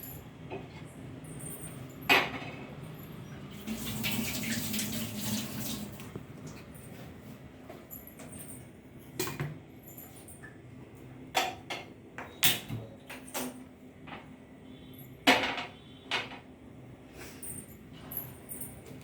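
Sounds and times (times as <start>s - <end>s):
cookware knocks and clatters: 11.4s - 13.6s, 15.3s - 16.5s.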